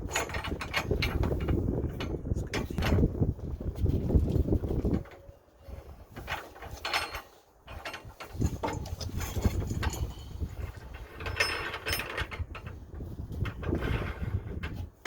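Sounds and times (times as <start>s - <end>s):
hand tools clanking on metal: 0.0s - 3.1s, 6.2s - 12.8s.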